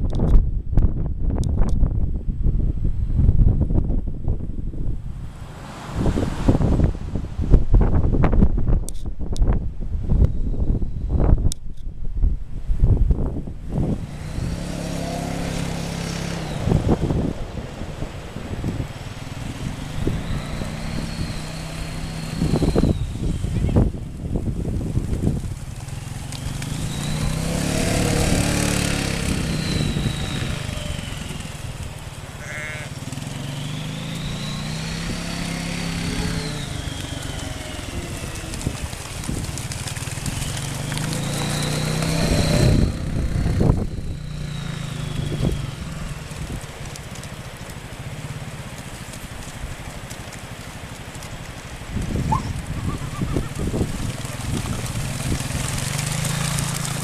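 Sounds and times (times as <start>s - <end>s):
quad bike engine revving: 13.7s - 47.3s, 52.0s - 57.0s
sheep bleating: 32.3s - 33.0s.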